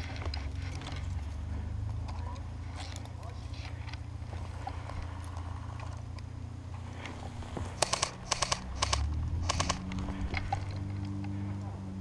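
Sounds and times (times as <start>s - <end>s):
airsoft rifle bursts: 7.7s - 10.7s.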